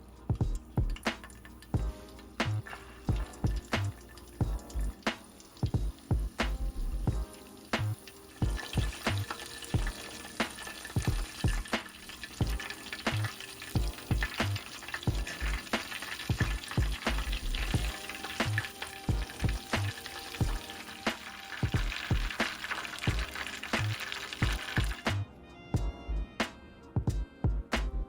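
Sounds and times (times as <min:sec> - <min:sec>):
food sizzling in hot oil: 0:00.7 - 0:25.1
utensil tapping pan: 0:07.2 - 0:25.0.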